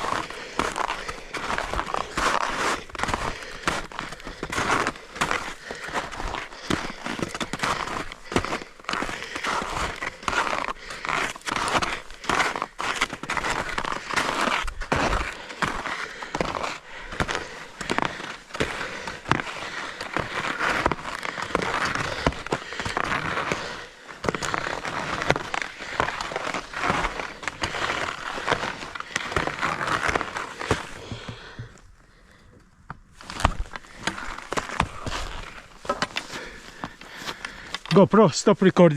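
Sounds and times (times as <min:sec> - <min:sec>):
skis scraping over snow: 0:00.0 - 0:31.4, 0:33.2 - 0:38.9.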